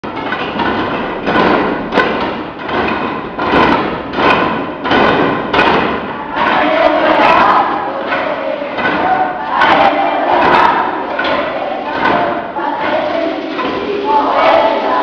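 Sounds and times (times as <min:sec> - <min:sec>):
wooden sticks struck together: 0:00.0 - 0:15.0.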